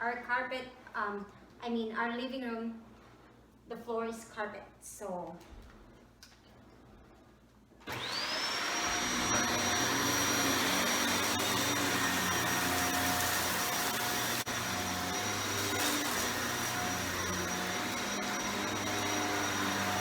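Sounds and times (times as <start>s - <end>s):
vacuum cleaner motor whine: 7.8s - 20.0s.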